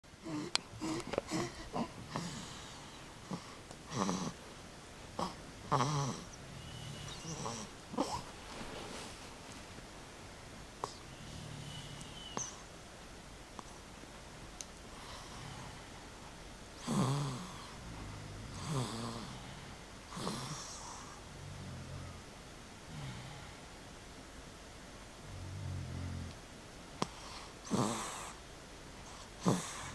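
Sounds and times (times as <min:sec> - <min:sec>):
wheezy snorts: 0:00.2 - 0:04.4, 0:05.2 - 0:09.4, 0:10.8 - 0:12.7, 0:16.8 - 0:22.3, 0:27.0 - 0:28.4, 0:29.0 - 0:29.9.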